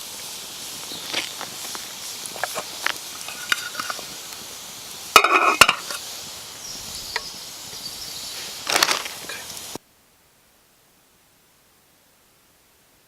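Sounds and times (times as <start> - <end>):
food sizzling in a pan: 0.0 - 9.8
utensil clicks and scrapes: 1.0 - 4.4.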